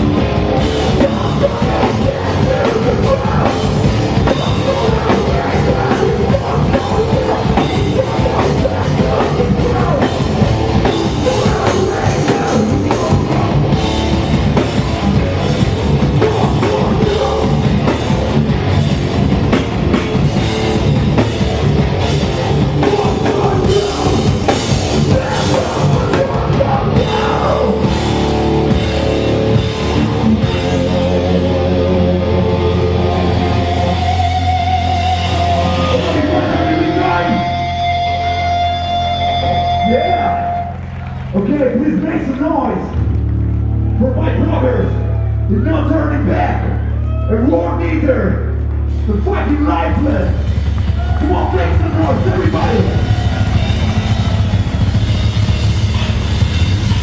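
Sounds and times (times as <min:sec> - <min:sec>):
fast drums: 0:00.0 - 0:37.5, 0:48.9 - 0:57.0
bass guitar: 0:00.0 - 0:57.0
distorted electric guitars: 0:00.0 - 0:57.0.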